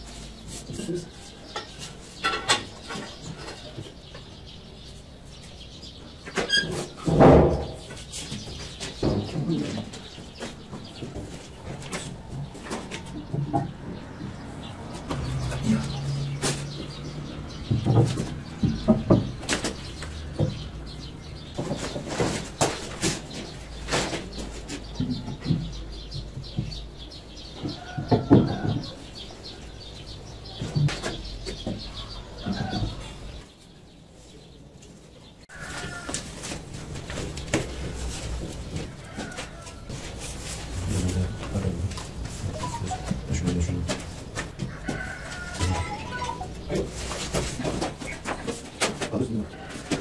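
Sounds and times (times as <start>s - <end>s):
irregular knocks and clicks: 6.3s - 20.9s, 24.1s - 29.0s.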